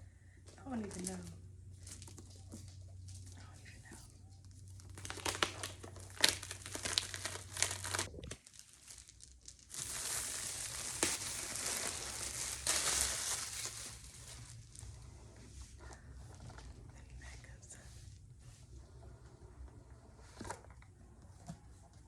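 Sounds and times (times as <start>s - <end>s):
plastic packaging crinkling: 0.6s - 15.0s.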